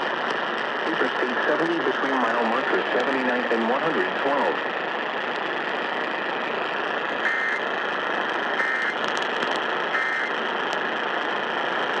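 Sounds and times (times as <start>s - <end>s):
am radio hiss: 0.8s - 4.6s, 7.2s - 7.6s, 8.6s - 9.0s, 9.9s - 10.3s
two-tone digital data bursts: 7.3s - 7.6s, 8.6s - 9.0s, 10.0s - 10.3s.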